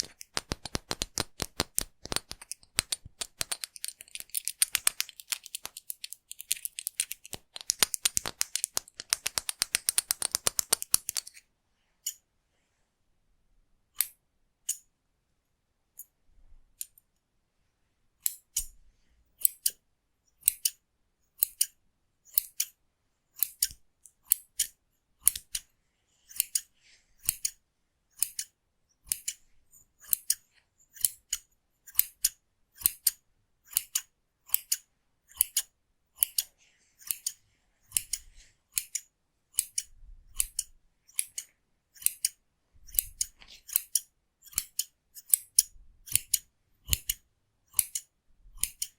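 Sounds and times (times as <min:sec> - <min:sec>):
scissors snipping hair: 0:00.0 - 0:11.4, 0:20.4 - 0:20.8, 0:21.4 - 0:22.8, 0:23.4 - 0:25.7, 0:26.3 - 0:27.6, 0:28.2 - 0:29.4, 0:30.0 - 0:30.4, 0:31.0 - 0:48.9.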